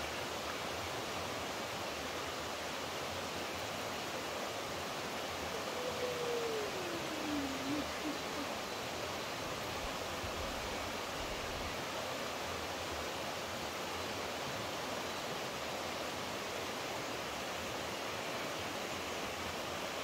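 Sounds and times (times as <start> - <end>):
running water rushing: 0.0 - 20.0.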